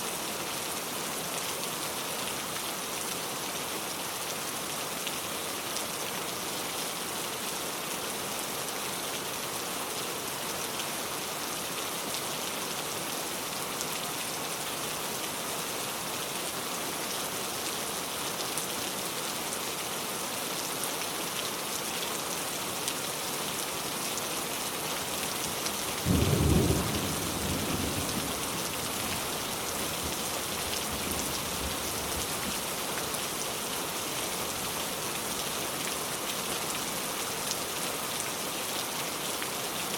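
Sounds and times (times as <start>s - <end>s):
steady rain falling: 0.0s - 39.9s
thunder clap rumbling: 26.1s - 29.3s.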